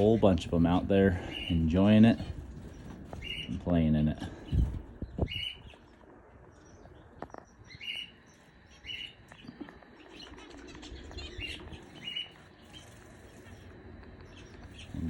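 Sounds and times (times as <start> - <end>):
canaries chirping: 0.0 - 15.0
wings fluttering: 0.0 - 15.0.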